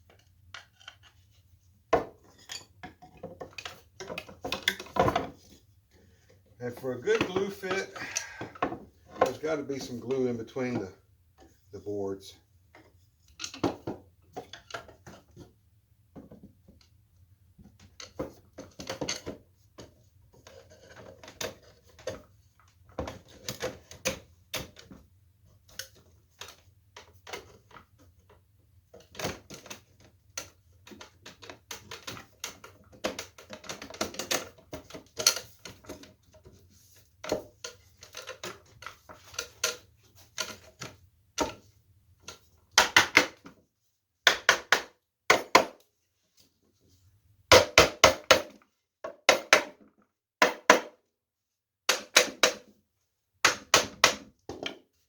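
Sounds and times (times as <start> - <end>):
wooden parts knocking together: 1.9 - 5.6, 6.6 - 10.0, 29.0 - 43.6, 44.2 - 45.8, 47.5 - 51.0, 51.9 - 52.8, 53.4 - 54.8.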